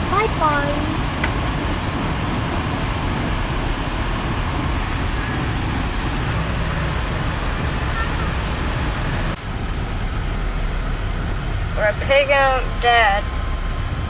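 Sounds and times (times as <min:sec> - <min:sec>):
car cabin road and engine noise: 0:00.0 - 0:14.0.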